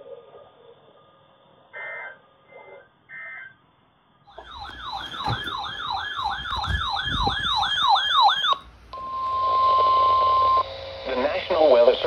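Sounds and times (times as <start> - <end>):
electronic siren wailing: 4.3 - 10.7.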